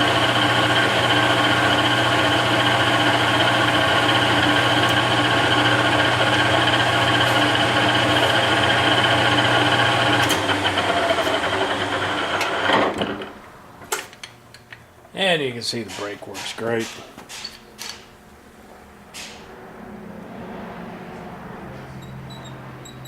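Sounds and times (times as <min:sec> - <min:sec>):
lathe whining: 0:00.0 - 0:13.4.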